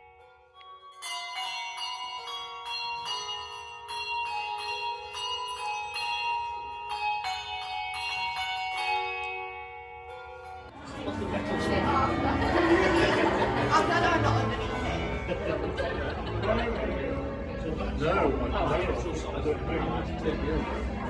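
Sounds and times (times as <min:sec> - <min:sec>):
ring of bells striking: 0:00.0 - 0:17.4.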